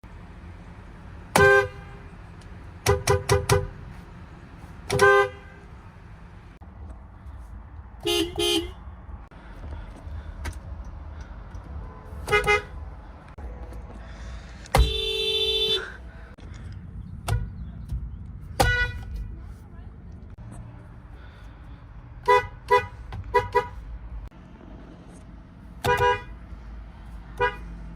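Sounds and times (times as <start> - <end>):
car horns honking: 1.2 - 6.2, 8.0 - 8.8, 11.7 - 16.4, 18.5 - 19.4, 22.2 - 23.9, 25.8 - 26.4, 27.2 - 27.9.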